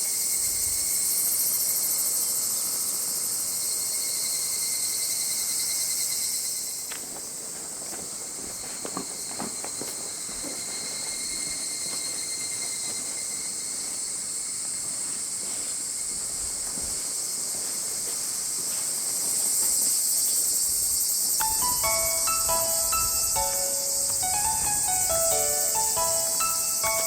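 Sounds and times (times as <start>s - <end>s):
insects shrilling: 18.2s - 27.0s
music: 21.4s - 27.0s.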